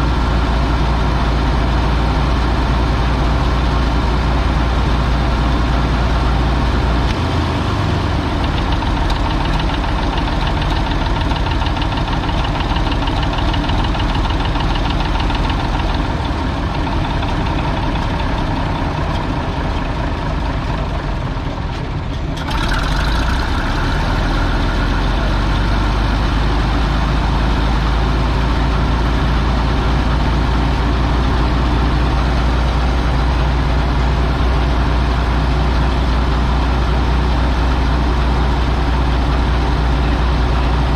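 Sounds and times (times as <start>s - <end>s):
large engine idling: 0.0s - 40.9s.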